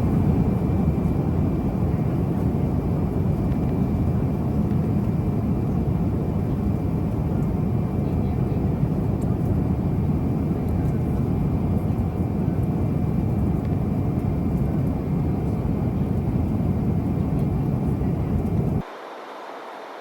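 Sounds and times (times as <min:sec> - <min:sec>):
jet cabin drone: 0:00.0 - 0:20.0.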